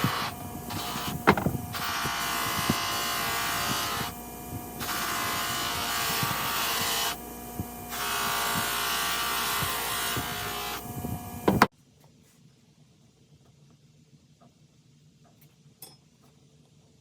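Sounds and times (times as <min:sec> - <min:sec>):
power tool grinding rust off metal: 0:00.0 - 0:11.7.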